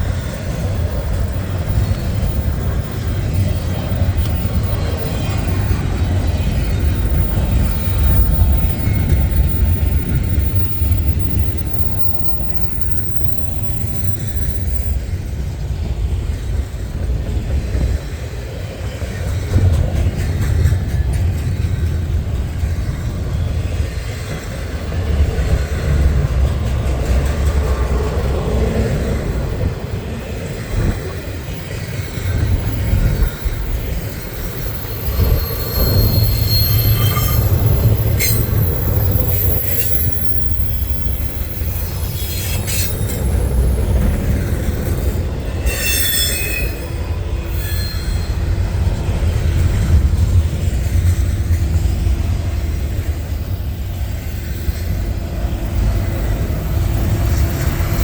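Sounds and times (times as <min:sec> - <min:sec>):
train wheels rumbling on rail: 0:00.0 - 0:58.0
high-pitched wheel squeals: 0:32.0 - 0:44.0, 0:45.1 - 0:48.8.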